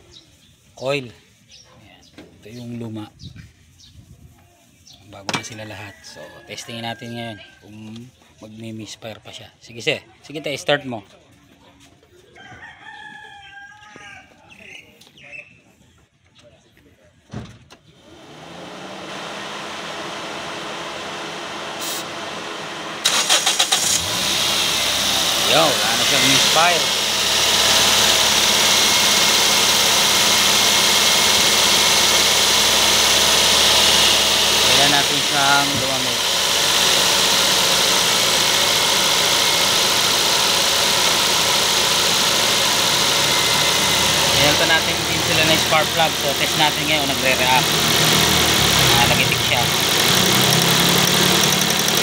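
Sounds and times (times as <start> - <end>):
car engine whirring: 18.0 - 52.0.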